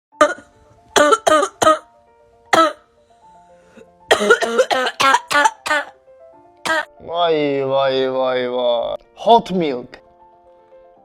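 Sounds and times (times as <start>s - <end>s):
background music with held notes: 0.1s - 11.0s
person coughing: 1.0s - 1.8s, 2.6s - 2.8s, 4.1s - 5.9s, 6.7s - 6.9s.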